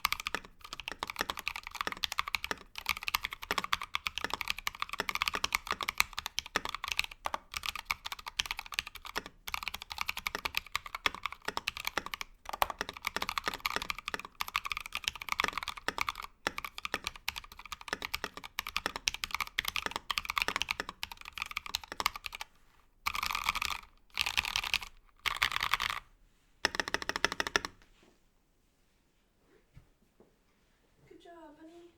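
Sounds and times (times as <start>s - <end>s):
mechanical keyboard typing: 0.0s - 22.5s, 23.1s - 27.8s.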